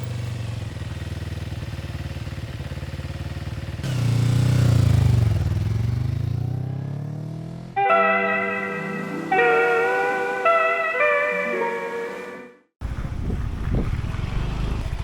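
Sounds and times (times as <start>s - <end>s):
motorcycle engine running: 0.0s - 7.8s.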